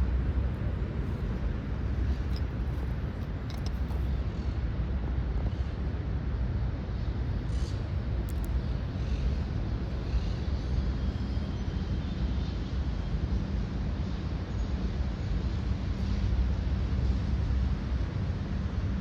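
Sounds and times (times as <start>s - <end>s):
steady low rumble: 0.0s - 10.9s.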